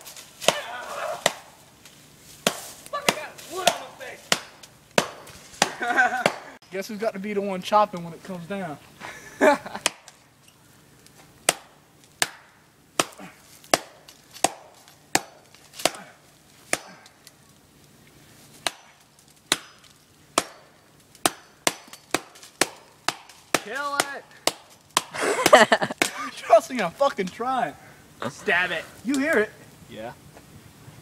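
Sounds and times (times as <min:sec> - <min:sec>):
axe chopping tree trunk: 0:00.0 - 0:01.6, 0:02.4 - 0:06.6, 0:09.8 - 0:10.2, 0:11.4 - 0:17.2, 0:18.6 - 0:26.2.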